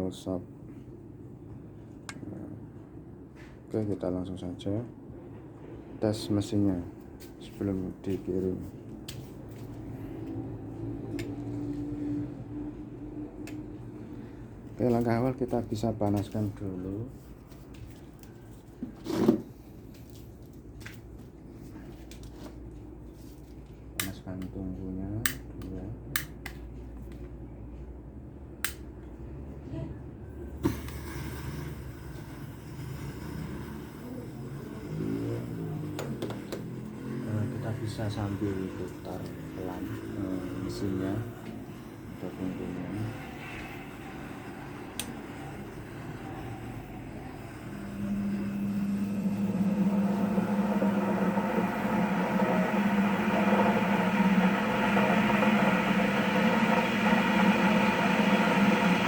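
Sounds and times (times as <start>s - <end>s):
cotton candy machine running: 30.5s - 59.0s
motor humming: 30.6s - 59.0s.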